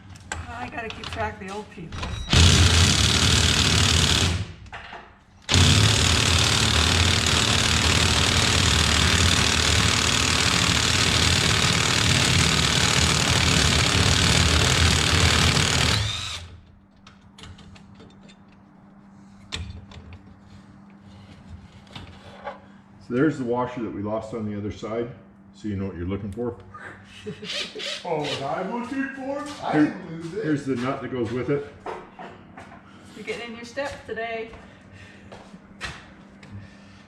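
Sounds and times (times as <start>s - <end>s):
power drill running: 2.3s - 4.6s, 5.5s - 16.6s.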